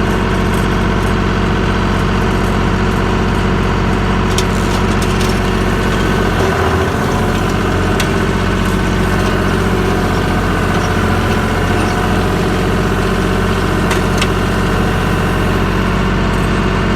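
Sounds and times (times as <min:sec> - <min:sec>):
tractor engine running: 0:00.0 - 0:16.9
machinery clicks: 0:04.2 - 0:16.2.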